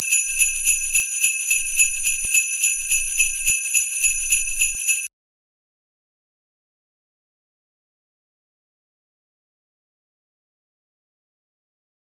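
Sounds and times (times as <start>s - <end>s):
sleigh bells shaking: 0.0s - 5.1s.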